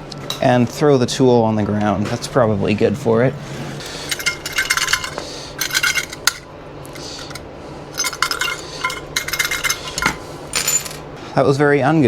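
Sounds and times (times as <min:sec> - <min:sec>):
metallic clinks and rattles: 0:03.9 - 0:11.0.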